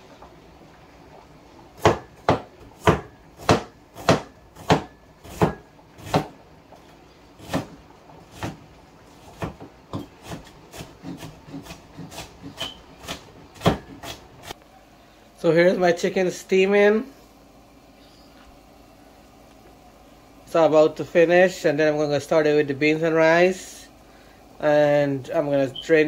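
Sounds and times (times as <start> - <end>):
knife chopping on wooden board: 1.8 - 6.4, 7.4 - 8.6, 9.2 - 14.6.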